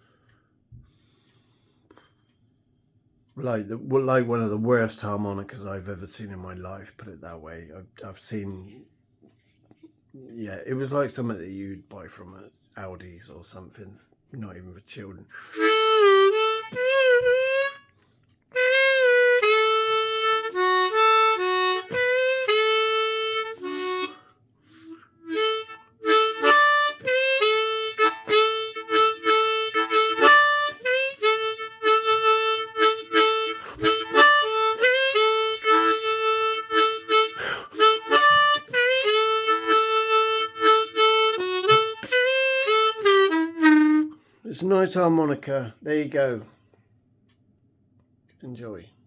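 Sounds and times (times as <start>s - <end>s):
harmonica playing: 14.9s - 44.7s.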